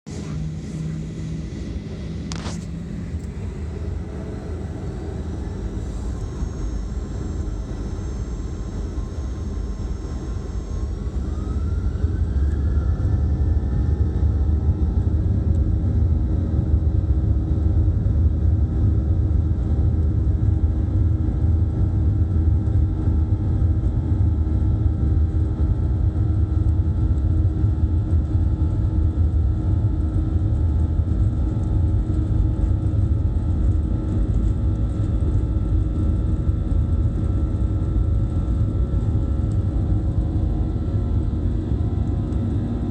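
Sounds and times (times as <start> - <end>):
jet engines spooling up: 0.1 - 14.0.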